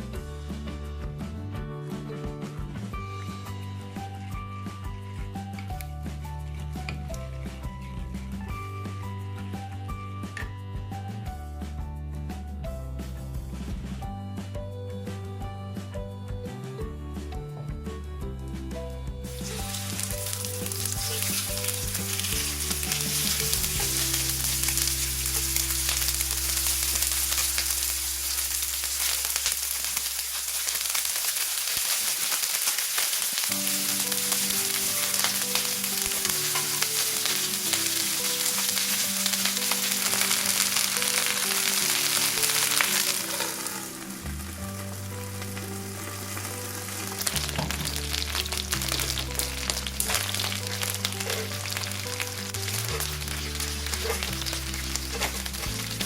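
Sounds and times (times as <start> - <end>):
background music: 0.0 - 56.0
chicken frying in oil: 19.3 - 56.0.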